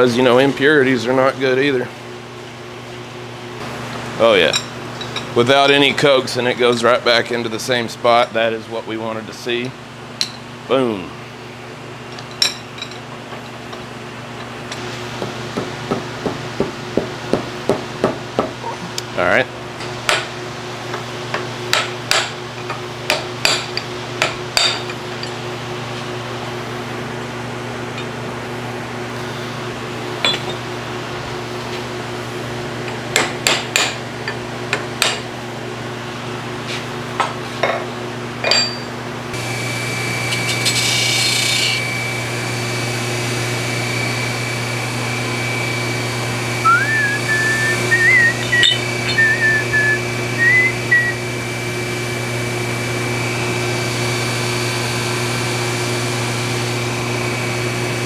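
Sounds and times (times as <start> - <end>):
machinery hum: 46.4 - 51.7
wavering whistle: 46.6 - 51.2
machine whine: 46.6 - 51.3.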